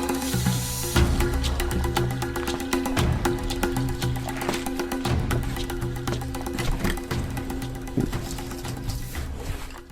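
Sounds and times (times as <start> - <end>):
instrumental background music: 0.0 - 9.9.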